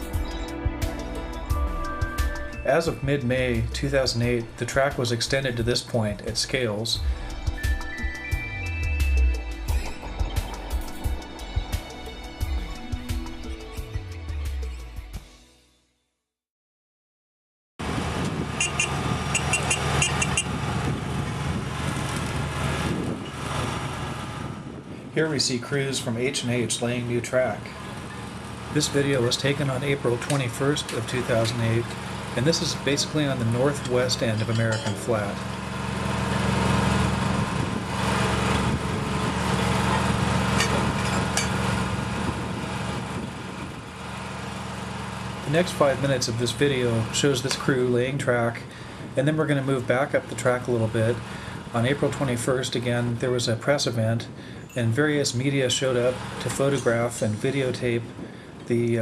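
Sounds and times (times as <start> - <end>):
diesel engine running: 0.0 - 15.0, 17.8 - 58.9
metal striking metal: 18.6 - 20.5, 33.8 - 35.4
sharp metallic clinks: 18.6 - 20.5, 34.3 - 35.1.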